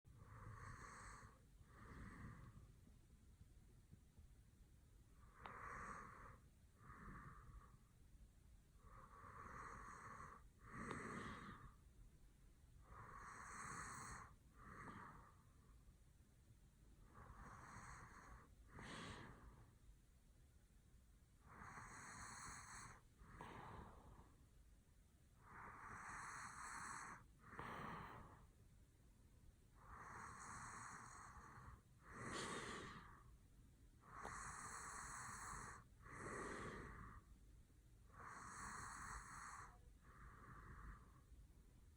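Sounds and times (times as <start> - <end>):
man snoring faintly: 0.1 - 2.8, 5.2 - 7.8, 8.8 - 11.8, 12.8 - 15.7, 17.0 - 19.7, 21.4 - 24.4, 25.4 - 28.5, 29.8 - 33.4, 34.0 - 37.3, 38.0 - 41.3.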